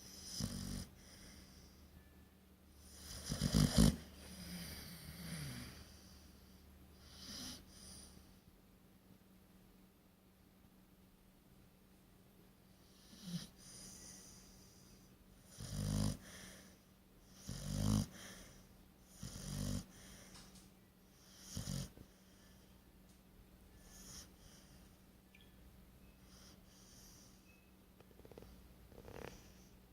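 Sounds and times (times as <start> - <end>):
dog snoring: 0.0 - 1.8, 2.8 - 6.2, 7.0 - 8.2, 12.8 - 20.3, 21.1 - 22.6, 23.8 - 24.8, 26.2 - 27.4, 28.0 - 29.8.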